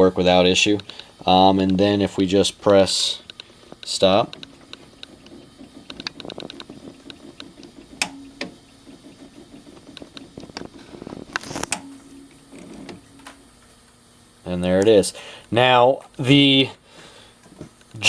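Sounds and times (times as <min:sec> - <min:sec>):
turntable motor hum: 0:00.3 - 0:15.1
tone arm clicks and clacks: 0:03.2 - 0:10.7.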